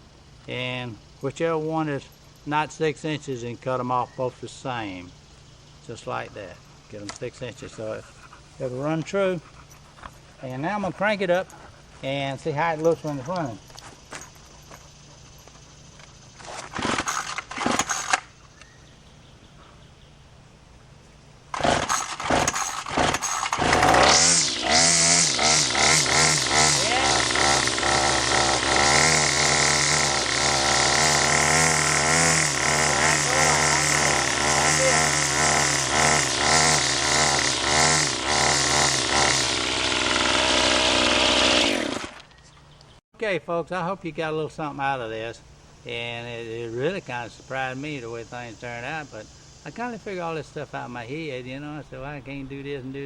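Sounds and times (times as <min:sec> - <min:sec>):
string trimmer pull-start: 0:16.0 - 0:18.4, 0:21.5 - 0:42.4
string trimmer engine revving: 0:16.4 - 0:18.3, 0:21.5 - 0:42.3.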